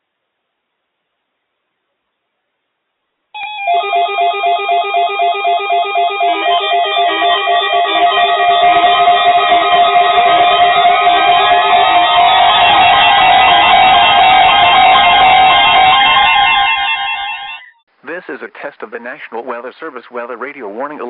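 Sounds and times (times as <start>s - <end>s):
pulsed electronic alarm beeping: 3.4s - 17.7s
overlapping beeps and tones: 4.4s - 16.7s.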